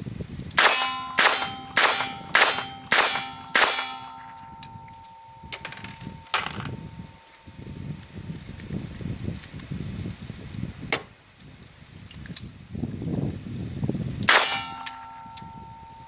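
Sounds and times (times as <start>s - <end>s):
revolver gunshots: 0.6s - 4.6s, 14.3s - 15.2s
metallic ringing: 0.6s - 8.0s, 14.3s - 16.0s.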